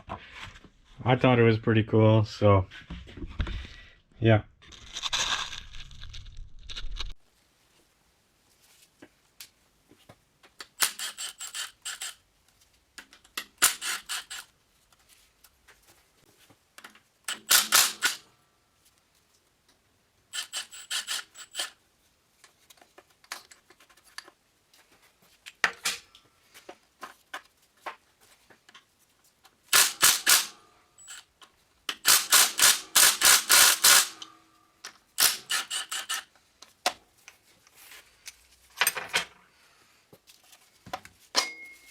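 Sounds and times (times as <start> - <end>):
impact wrench hammering: 31.9 - 34.4.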